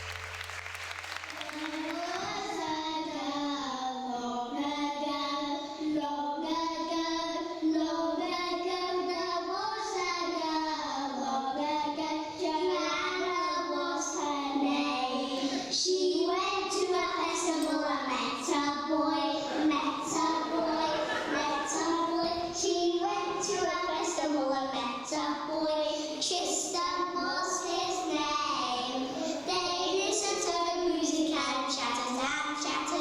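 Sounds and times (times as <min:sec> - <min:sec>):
children singing: 0:15.0 - 0:15.8, 0:19.0 - 0:24.3.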